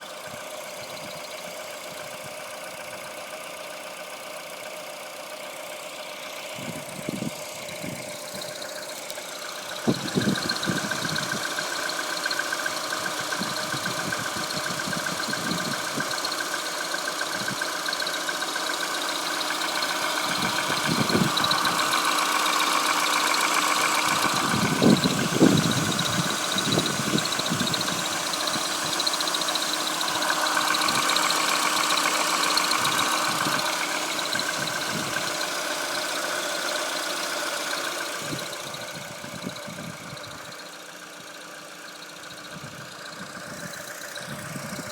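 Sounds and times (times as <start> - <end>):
car engine running: 0.0 - 44.9.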